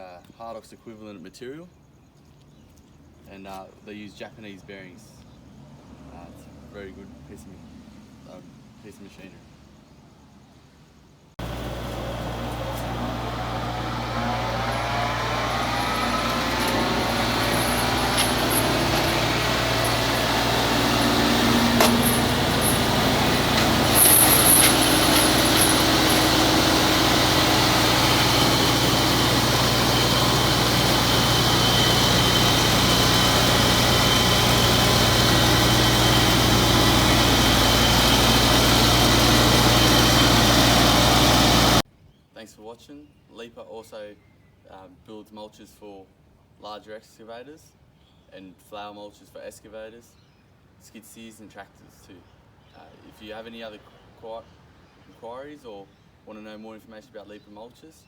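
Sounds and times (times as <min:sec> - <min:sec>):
diesel engine running under load: 0:11.4 - 0:41.8
forestry mulcher: 0:11.4 - 0:41.8.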